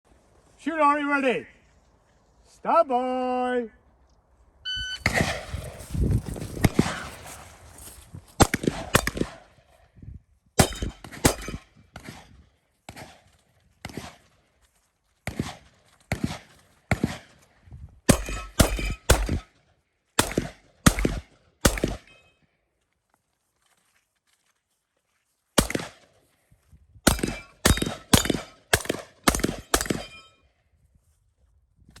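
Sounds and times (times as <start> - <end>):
shotgun shots: 5.0 - 5.9, 6.6 - 7.6, 8.4 - 9.6, 10.6 - 14.2, 15.3 - 17.4, 18.1 - 19.6, 20.2 - 22.2, 25.6 - 26.1, 27.1 - 30.3
steel targets ringing: 29.3 - 30.5.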